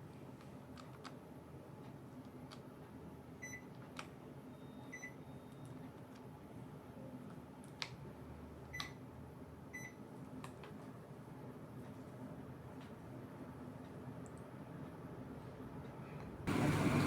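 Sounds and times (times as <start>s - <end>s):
air conditioner beeping: 3.4s - 6.1s, 8.6s - 9.1s, 9.7s - 10.1s, 16.5s - 17.0s.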